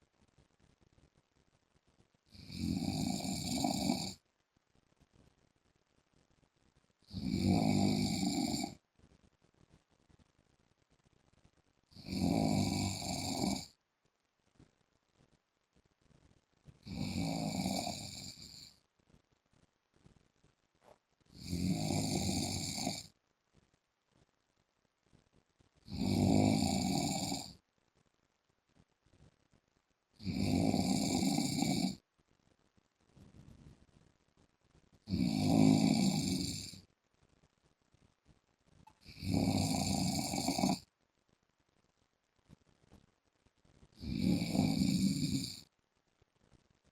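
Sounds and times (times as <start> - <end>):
man snoring: 2.3 - 4.2, 7.1 - 8.8, 12.0 - 13.7, 16.8 - 18.7, 21.4 - 23.1, 25.9 - 27.6, 30.2 - 32.0, 35.1 - 36.8, 39.0 - 40.8, 44.0 - 45.7.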